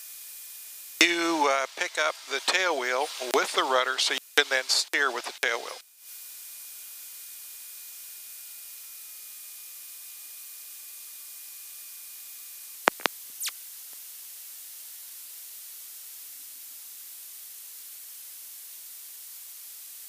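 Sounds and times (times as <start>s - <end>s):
electronic static hiss: 0.6s - 5.8s, 12.8s - 20.0s
sharp clicks: 12.9s - 13.6s.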